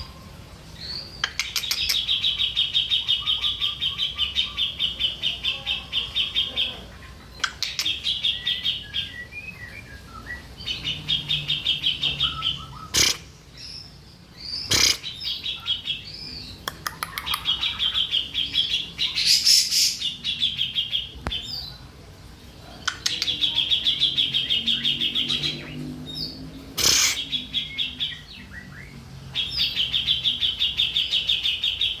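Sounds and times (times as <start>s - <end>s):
bird chattering trills: 1.1s - 9.1s, 10.6s - 13.8s, 14.4s - 21.6s, 22.7s - 28.5s
sharp clicks: 1.2s - 2.1s, 16.6s - 17.5s, 22.8s - 23.3s.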